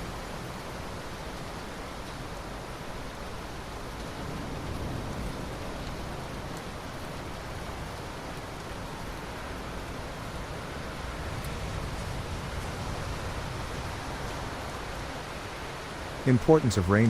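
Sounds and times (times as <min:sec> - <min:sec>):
steady rainfall: 0:00.0 - 0:17.0.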